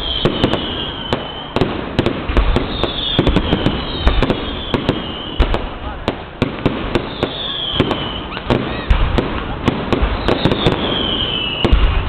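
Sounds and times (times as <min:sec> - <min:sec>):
falling firework whistles: 0:00.0 - 0:05.8, 0:06.7 - 0:12.0
deep firework booms: 0:00.0 - 0:12.0
firework bangs and crackles: 0:00.0 - 0:12.0.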